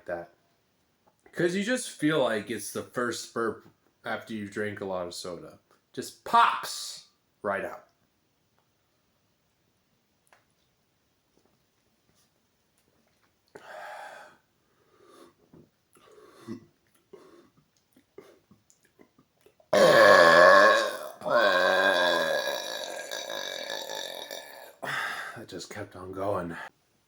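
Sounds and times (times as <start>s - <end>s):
man burping loudly: 19.7s - 25.1s.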